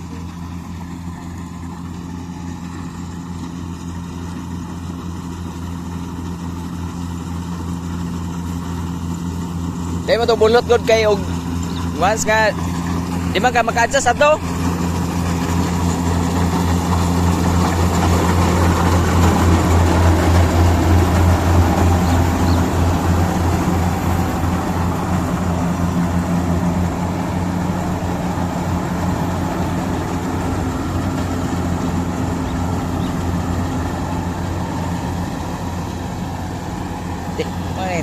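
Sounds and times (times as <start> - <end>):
combine harvester engine hum: 0.0 - 38.0
mechanical rush: 10.1 - 38.0.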